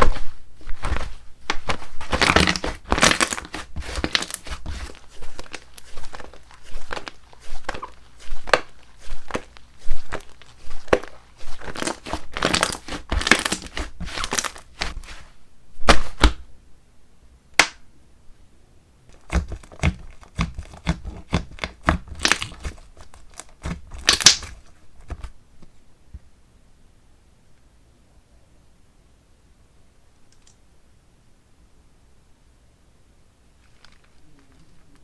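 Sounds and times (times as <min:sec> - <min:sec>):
slime squeezed by hand: 0:00.8 - 0:15.3, 0:19.2 - 0:25.2.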